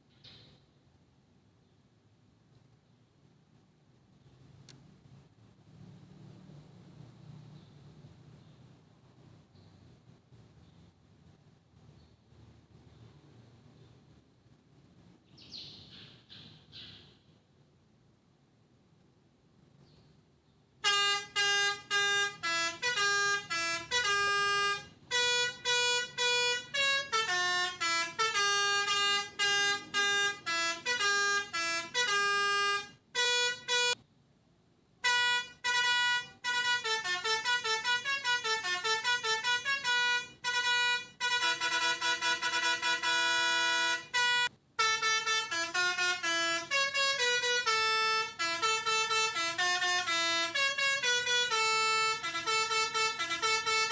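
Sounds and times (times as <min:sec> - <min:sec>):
melodica melody: 0:20.8 - 0:34.0, 0:35.0 - 0:53.9.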